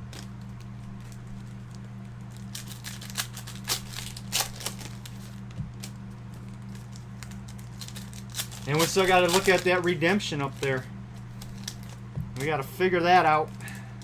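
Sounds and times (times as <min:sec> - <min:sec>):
low electrical hum: 0:00.0 - 0:14.0
cardboard box crinkling: 0:02.4 - 0:12.0.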